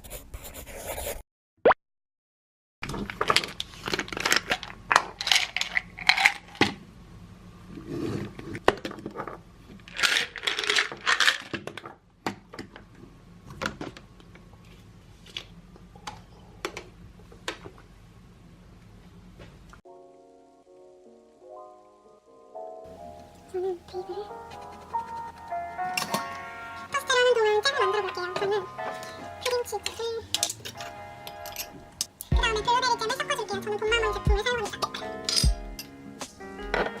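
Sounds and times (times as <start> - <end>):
packaging crinkling: 2.9 - 6.6
small hard objects clinking: 3.0 - 6.6, 9.9 - 11.8, 30.3 - 31.8.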